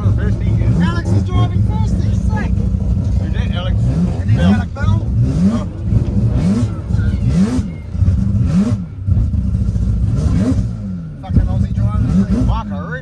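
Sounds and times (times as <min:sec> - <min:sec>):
rotary engine revving hard: 0:00.0 - 0:13.0.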